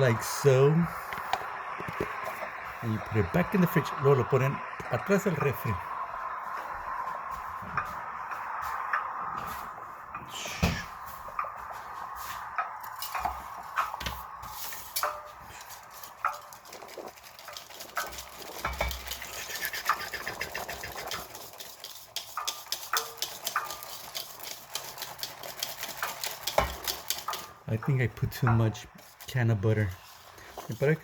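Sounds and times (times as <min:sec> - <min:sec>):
metal utensil clinking against bowl: 0:15.0 - 0:20.2, 0:20.8 - 0:27.5.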